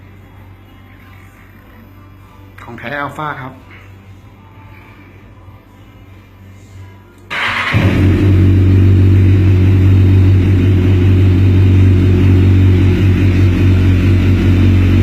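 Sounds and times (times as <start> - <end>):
motorcycle engine starting and running: 7.3 - 15.0.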